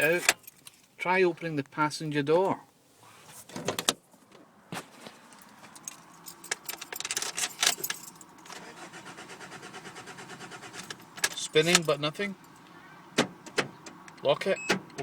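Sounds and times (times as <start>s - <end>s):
keys jangling: 5.8s - 8.3s
starter motor cranking engine: 8.5s - 11.0s.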